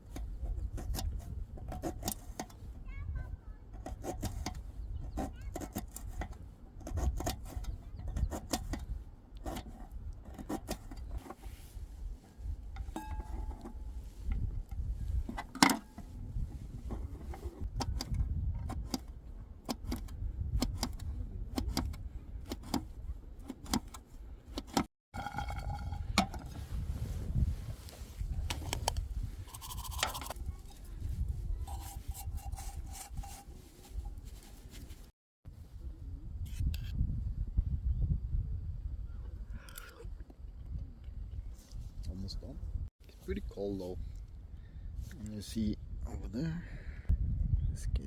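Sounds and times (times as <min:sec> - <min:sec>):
constant low rumble: 0:00.0 - 0:48.0
camp cookware clinking and knocking: 0:12.8 - 0:14.5, 0:25.1 - 0:26.6.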